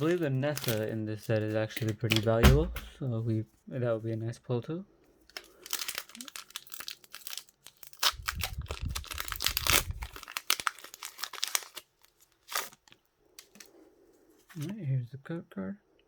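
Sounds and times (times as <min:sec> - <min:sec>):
foil wrapper crinkling and tearing: 0:00.0 - 0:02.4, 0:05.3 - 0:13.8.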